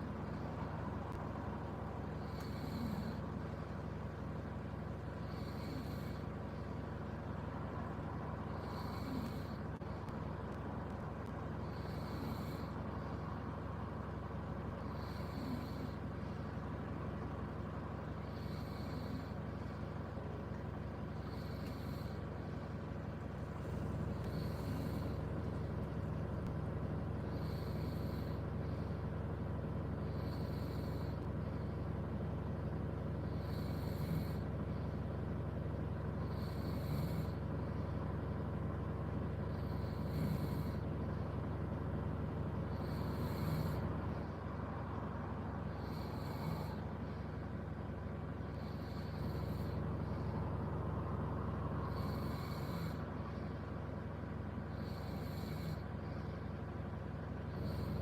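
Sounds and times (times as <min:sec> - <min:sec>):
low hum inside car: 0:00.0 - 0:58.0
person snoring: 0:02.2 - 0:03.2, 0:05.2 - 0:06.2, 0:08.5 - 0:09.6, 0:11.7 - 0:13.1, 0:14.8 - 0:16.0, 0:18.2 - 0:19.4, 0:21.2 - 0:22.3, 0:23.7 - 0:25.3, 0:27.3 - 0:28.4, 0:30.1 - 0:31.3, 0:33.3 - 0:34.4, 0:36.2 - 0:37.4, 0:39.5 - 0:40.8, 0:42.7 - 0:43.9, 0:45.7 - 0:47.2, 0:48.5 - 0:50.4, 0:51.8 - 0:53.4, 0:54.7 - 0:55.8, 0:57.5 - 0:58.0.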